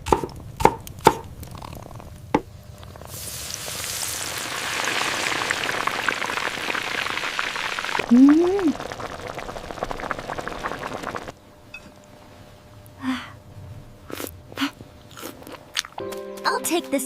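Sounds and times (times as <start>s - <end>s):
food sizzling in a hot pan: 3.1s - 9.5s.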